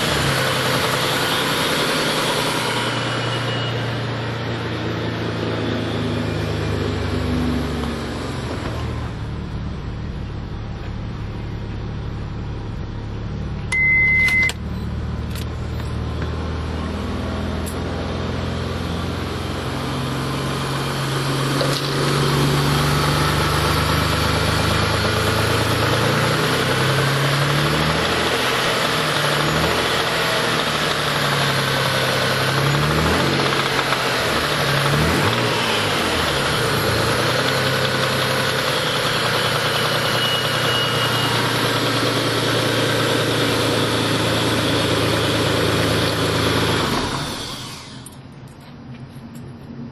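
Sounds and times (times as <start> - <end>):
short high beep: 3.1 - 4.1, 13.7 - 14.6, 39.8 - 41.6
engine running with rod knock: 7.7 - 9.2, 13.6 - 16.4, 21.3 - 49.6.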